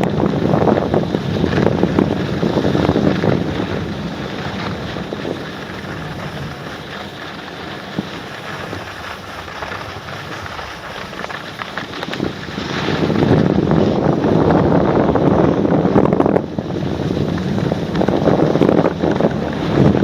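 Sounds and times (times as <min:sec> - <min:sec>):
ski edges scraping icy snow: 0:00.0 - 0:20.0
wind buffeting microphone: 0:00.0 - 0:20.0.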